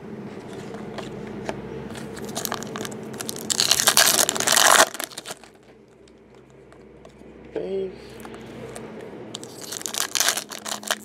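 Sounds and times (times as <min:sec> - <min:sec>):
foil wrapper crinkling: 0:02.0 - 0:05.6, 0:09.4 - 0:11.0.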